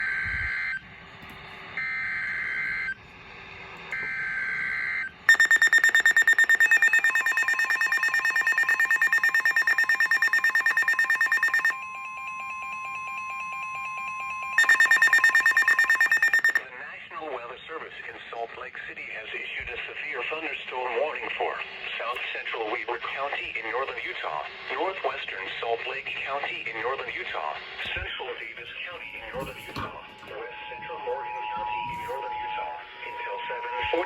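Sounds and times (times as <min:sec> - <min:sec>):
steady single warning tone: 0:04.0 - 0:16.6, 0:29.3 - 0:34.0
buzzing digital header bursts: 0:05.3 - 0:11.7
rapidly pulsing electronic alert beep: 0:05.3 - 0:16.6.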